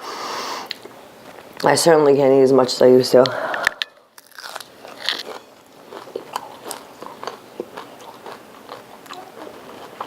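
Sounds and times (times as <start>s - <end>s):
person chewing crunchy food: 3.7s - 10.0s.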